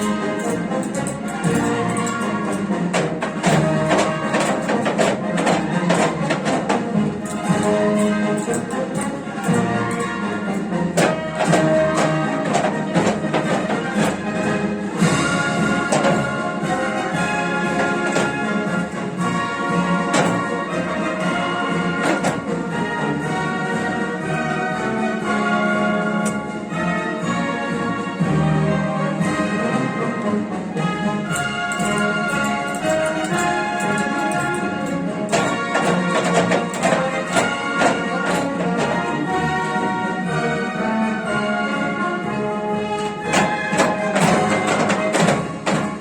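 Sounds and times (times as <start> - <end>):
sharp percussion hits: 0.0 - 16.7
orchestral music with brass and strings: 0.0 - 46.0.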